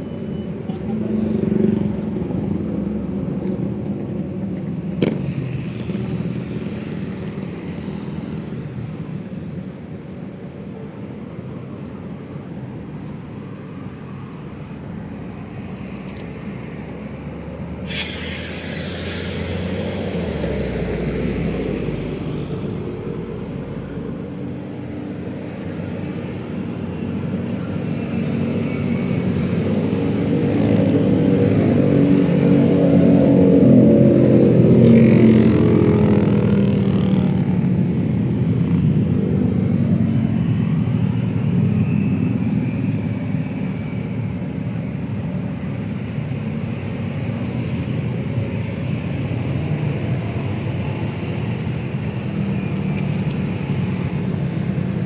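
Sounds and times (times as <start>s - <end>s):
road traffic rumble: 0.0s - 55.0s
heavy vehicle rumble: 14.4s - 55.0s
hiss: 17.8s - 22.0s.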